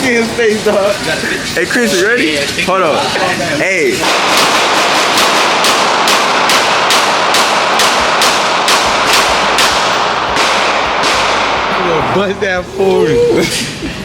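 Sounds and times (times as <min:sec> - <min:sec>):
continuous echo and noise: 0:00.0 - 0:14.0
rapid gunfire: 0:04.0 - 0:11.9.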